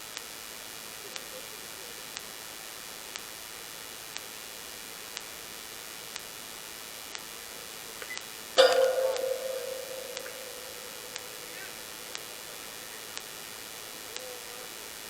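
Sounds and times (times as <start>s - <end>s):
steady hiss: 0.0s - 15.0s
faint ticking: 8.2s - 14.3s
loud hit with ringing tone: 8.6s - 12.6s.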